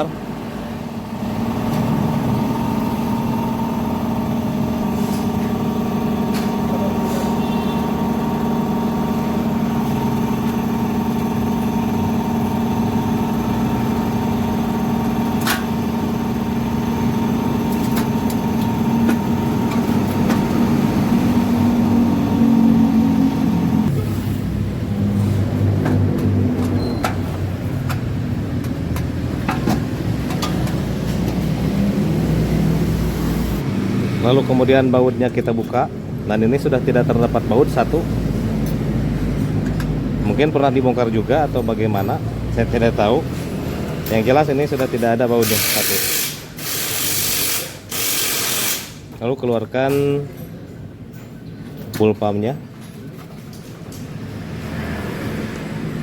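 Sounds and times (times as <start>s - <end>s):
motor running with hum: 0.9s - 24.3s.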